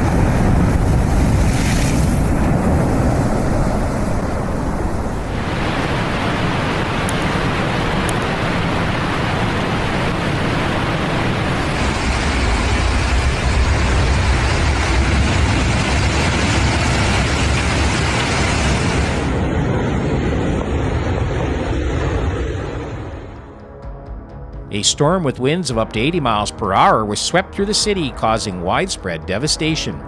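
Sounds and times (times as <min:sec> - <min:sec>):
rushing crashing water: 0:00.0 - 0:19.3
wind: 0:00.0 - 0:23.5
wind buffeting microphone: 0:00.0 - 0:23.5.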